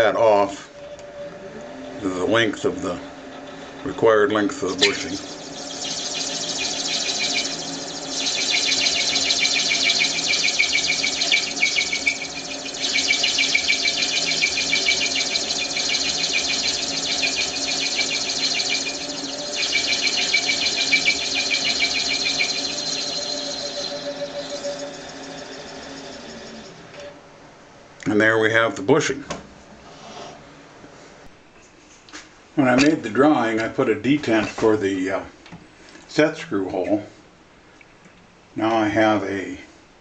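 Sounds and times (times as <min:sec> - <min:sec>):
lathe parting tool squealing: 0:04.8 - 0:26.8
lathe humming: 0:04.8 - 0:26.9.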